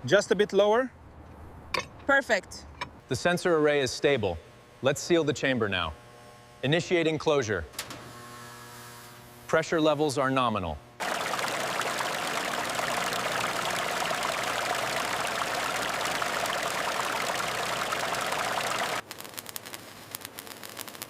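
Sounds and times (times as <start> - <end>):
crackling clicks: 11.0 - 21.0.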